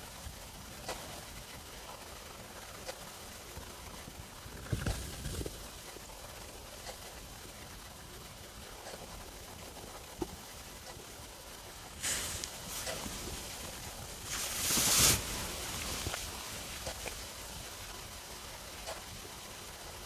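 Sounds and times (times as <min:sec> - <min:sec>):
steady low hiss: 0:00.0 - 0:20.0
stomach gurgling: 0:03.6 - 0:07.1.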